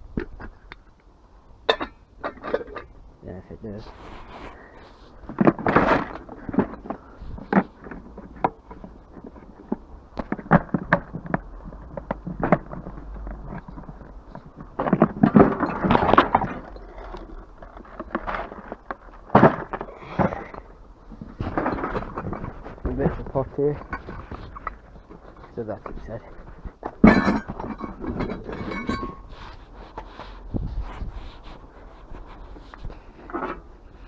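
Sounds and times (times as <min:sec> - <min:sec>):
scrap metal clanking: 0:12.4 - 0:31.1.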